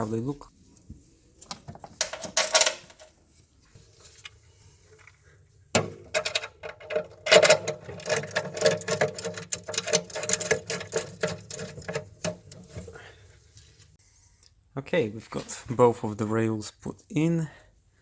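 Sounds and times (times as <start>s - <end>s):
metal rails clicking and rattling: 2.0s - 3.1s, 5.8s - 13.0s.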